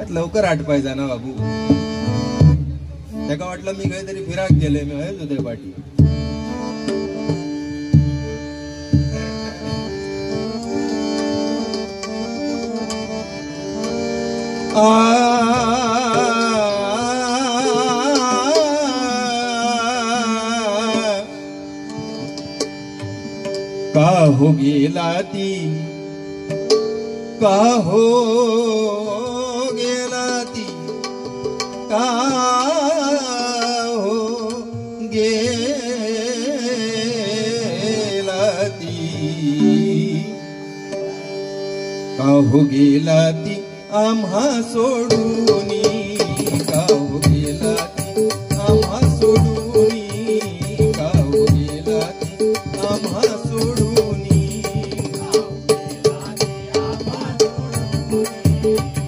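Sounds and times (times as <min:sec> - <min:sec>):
harmonium chords: 0:00.0 - 0:59.0
man singing devotional song: 0:03.2 - 0:26.4, 0:27.3 - 0:40.9, 0:42.1 - 0:59.0
person singing long held note: 0:39.5 - 0:40.4.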